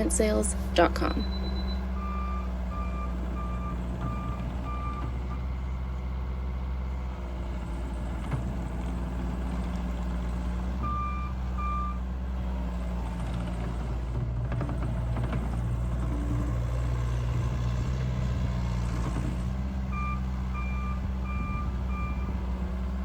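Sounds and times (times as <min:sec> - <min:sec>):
backup alarm beeping: 0:00.0 - 0:05.1, 0:19.9 - 0:22.4
diesel engine running: 0:00.0 - 0:23.0.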